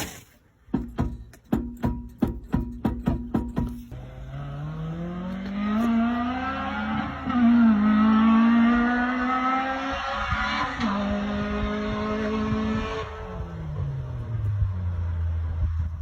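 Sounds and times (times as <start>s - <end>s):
car droning hum: 3.9s - 16.0s.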